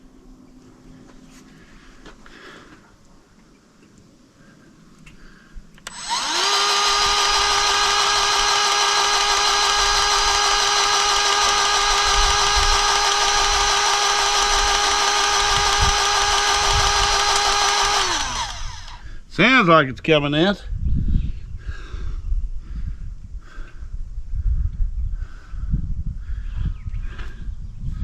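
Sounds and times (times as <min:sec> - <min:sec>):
grease gun motor running: 0:05.8 - 0:19.1.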